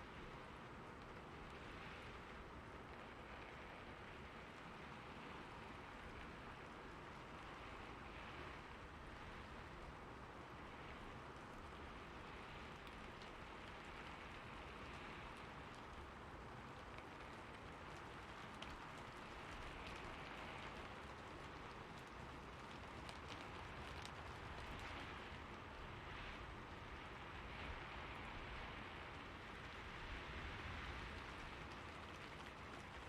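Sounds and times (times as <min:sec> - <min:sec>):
rain on a roof: 0:00.0 - 0:33.0
raindrop ticks: 0:00.0 - 0:33.0.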